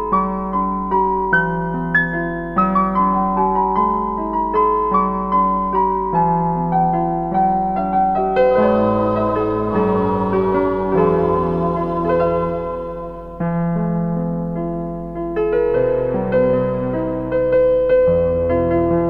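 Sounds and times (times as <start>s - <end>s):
gentle electric piano melody: 0.0s - 19.0s
low bass part: 8.5s - 13.9s.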